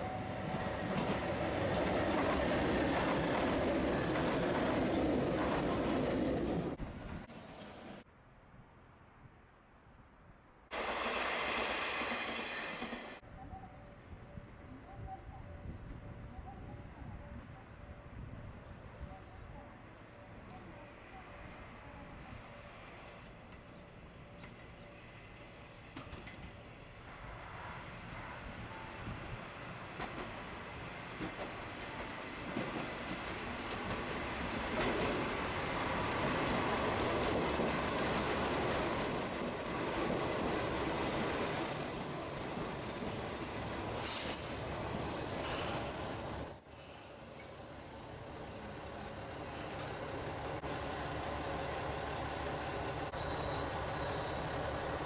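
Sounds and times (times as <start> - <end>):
train rolling rumble: 0.0 - 8.1, 22.8 - 55.0
high wheel squeal: 41.7 - 48.4.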